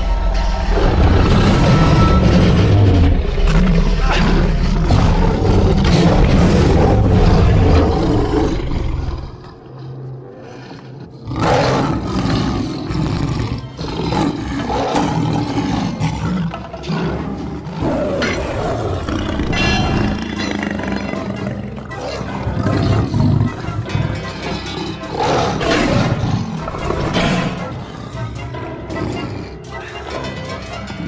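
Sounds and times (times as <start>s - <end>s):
creature roaring: 1.2s - 23.8s.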